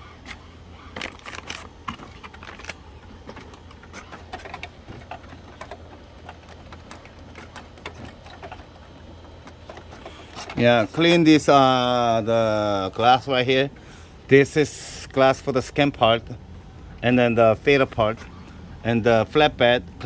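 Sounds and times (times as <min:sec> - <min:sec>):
low steady hum: 0:00.0 - 0:20.0
inkjet printer clicks and knocks: 0:00.2 - 0:11.2.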